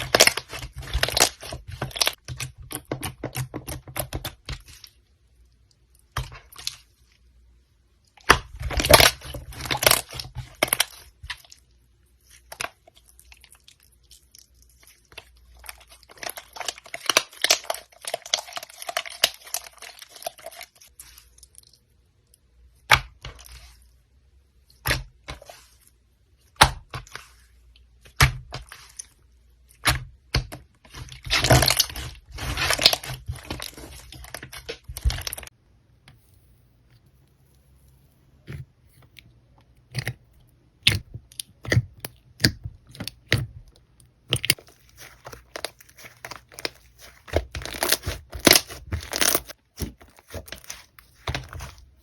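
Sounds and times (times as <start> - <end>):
slime squished by hand: 37.4 - 52.0.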